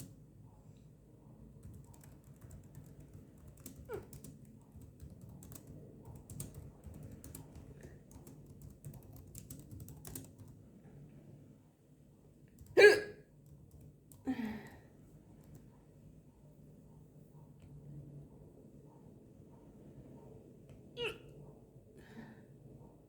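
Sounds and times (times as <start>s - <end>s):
woman hiccuping: 12.8s - 13.2s, 21.0s - 21.3s.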